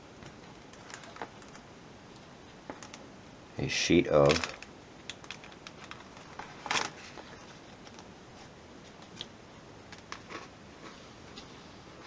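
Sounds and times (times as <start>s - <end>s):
plastic folder crinkle: 4.2s - 8.1s.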